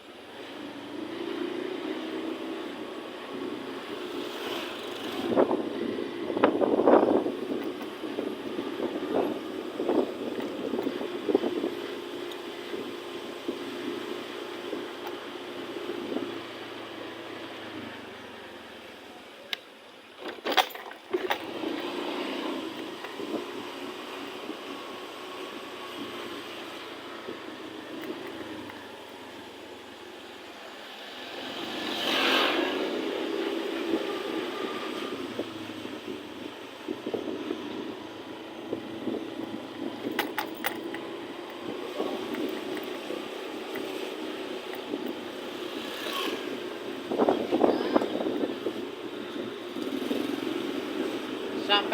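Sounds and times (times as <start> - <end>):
road vehicle running: 0.0 - 51.9.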